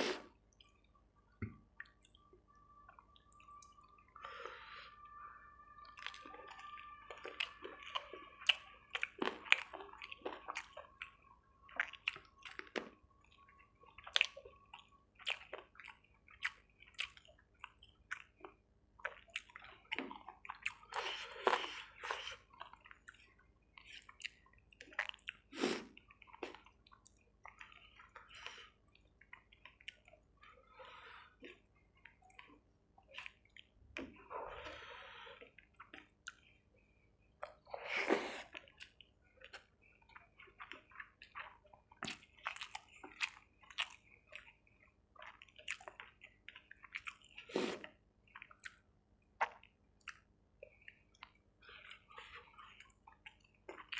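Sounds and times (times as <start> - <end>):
person chewing wetly: 0.1 - 53.9
faint steady tone: 0.2 - 16.1
lip smacks: 47.7 - 53.9.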